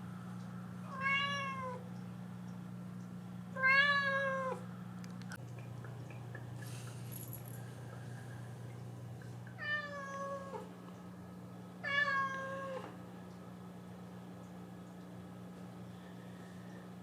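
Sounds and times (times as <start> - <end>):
steady low hum: 0.0 - 17.0
cat meowing: 0.9 - 1.8, 11.8 - 12.9.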